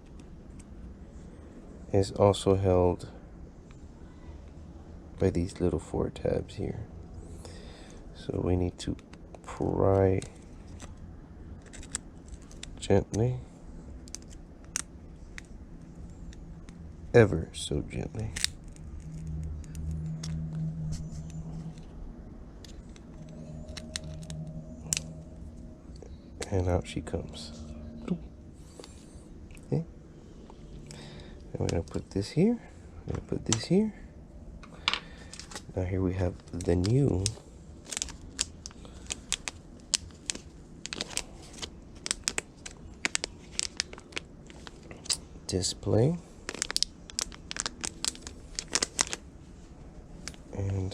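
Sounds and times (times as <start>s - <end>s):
steady low hum: 0.0s - 50.9s
plastic packaging clicking and crinkling: 10.1s - 11.0s, 11.6s - 13.2s, 22.6s - 25.1s, 31.6s - 32.0s, 36.3s - 45.3s, 46.4s - 49.2s.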